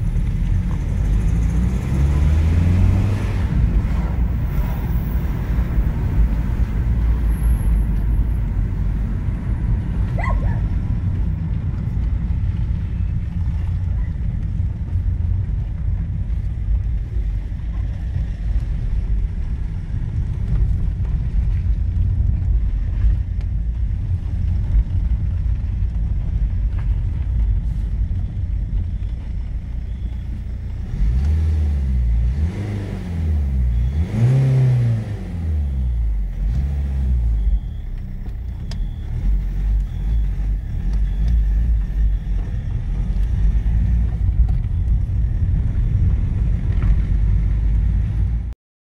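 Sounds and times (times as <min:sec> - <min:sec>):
engine revving: 0:00.0 - 0:11.3, 0:30.7 - 0:48.3
diesel engine idling with ticking: 0:00.0 - 0:32.5, 0:35.3 - 0:48.5.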